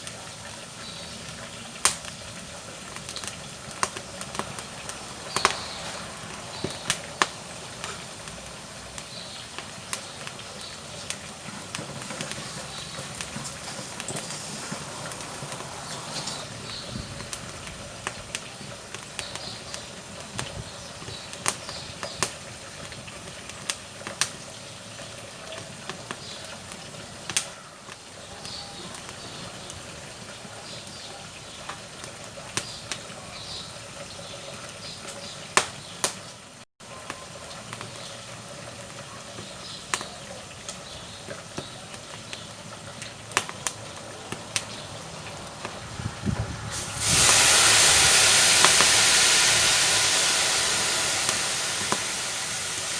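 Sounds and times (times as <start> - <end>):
loud steady hiss: 0.0 - 18.4, 44.6 - 52.9
firewood crackling and popping: 0.0 - 29.7, 35.0 - 36.3, 39.8 - 52.9
low steady hiss: 43.8 - 52.9.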